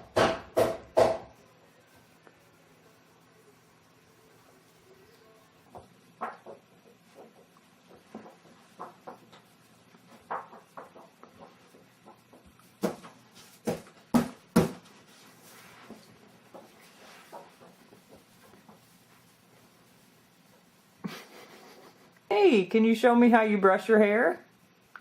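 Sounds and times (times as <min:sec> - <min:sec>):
light knocks and clatter: 0:05.7 - 0:09.5.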